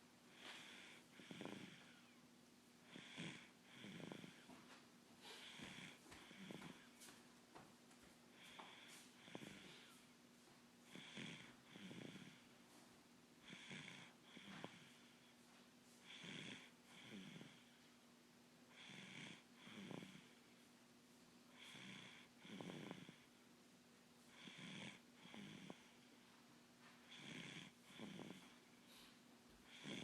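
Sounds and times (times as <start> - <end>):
faint steady hum: 0.0 - 30.0
soft snoring: 0.3 - 2.2, 2.8 - 7.2, 8.3 - 10.2, 10.8 - 12.6, 13.4 - 15.4, 16.0 - 18.0, 18.7 - 20.7, 21.5 - 23.4, 24.3 - 26.3, 27.0 - 30.0.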